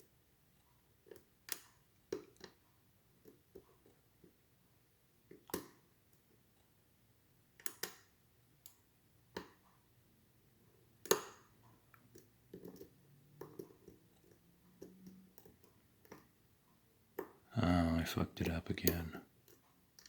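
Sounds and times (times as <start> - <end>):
lock picks clicking in a lock: 1.1 - 2.6, 7.6 - 8.8, 12.1 - 16.3.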